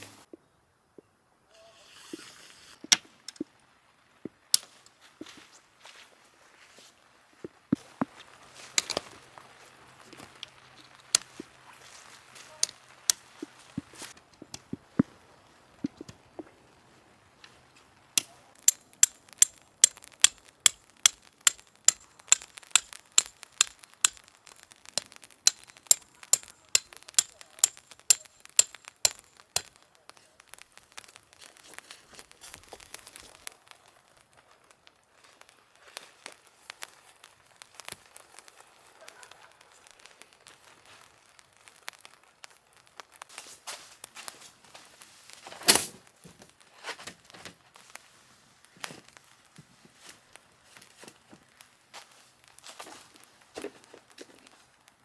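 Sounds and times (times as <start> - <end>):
sharp taps: 18.2 - 31.2.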